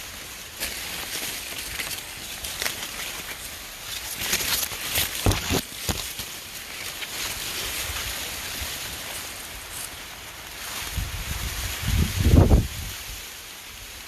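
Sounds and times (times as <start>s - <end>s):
dry corn leaves rustling: 0.0s - 14.0s
sharp crackles of leaves: 0.0s - 14.0s
wind noise on microphone: 10.8s - 13.9s.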